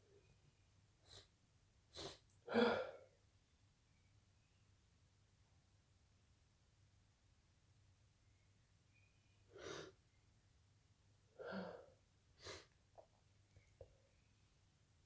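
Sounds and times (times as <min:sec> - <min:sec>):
breathy in-breath: 0:11.4 - 0:12.7.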